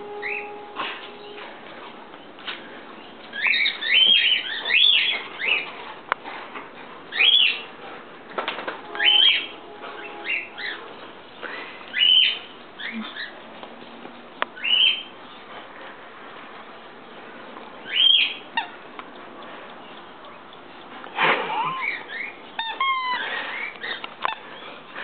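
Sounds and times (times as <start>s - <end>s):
faint clicks: 9.8s - 25.0s
animal chirping calls: 21.5s - 24.0s.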